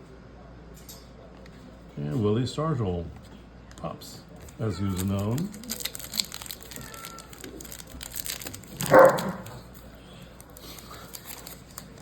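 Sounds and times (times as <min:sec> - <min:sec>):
cards being handled: 0:04.4 - 0:12.0
dog barking: 0:08.8 - 0:09.6.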